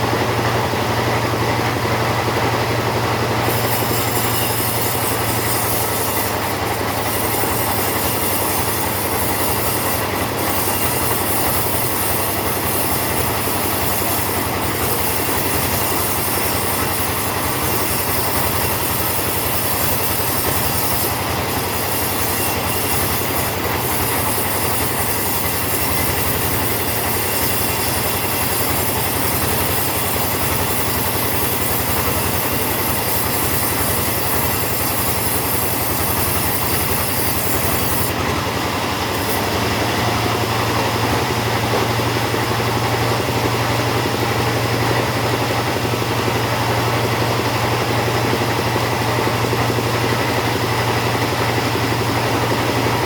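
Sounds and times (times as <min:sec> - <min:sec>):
chainsaw cutting wood: 0:00.0 - 0:53.0.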